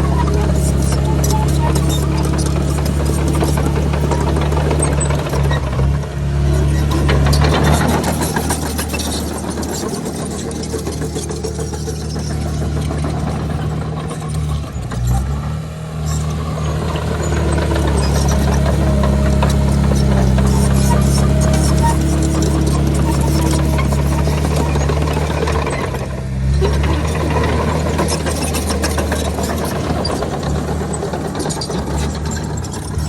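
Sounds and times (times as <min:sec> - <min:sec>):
bulldozer diesel engine running: 0:00.0 - 0:33.0.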